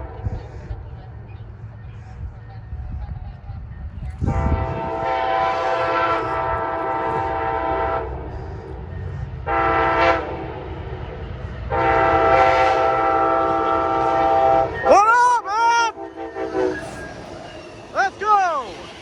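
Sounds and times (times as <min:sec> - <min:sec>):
low train rumble: 0:00.0 - 0:19.0
train air horn: 0:04.3 - 0:08.5, 0:09.4 - 0:10.7, 0:11.7 - 0:15.0, 0:15.8 - 0:17.2.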